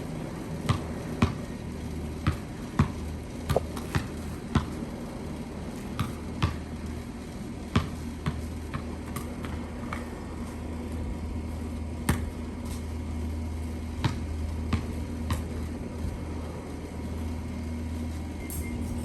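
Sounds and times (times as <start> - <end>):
basketball bouncing on hard floor: 3.5 - 4.7.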